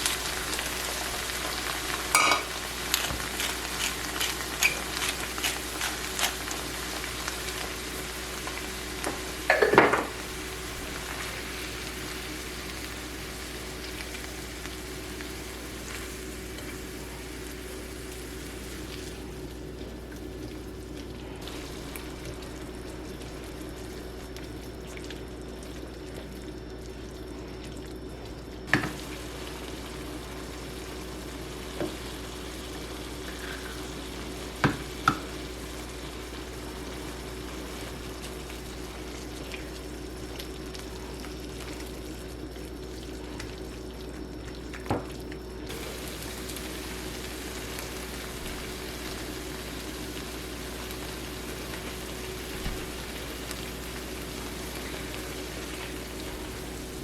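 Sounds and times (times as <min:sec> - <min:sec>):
food sizzling in a frying pan: 0:00.0 - 0:57.0
utensil clinking against pan: 0:02.2 - 0:02.5.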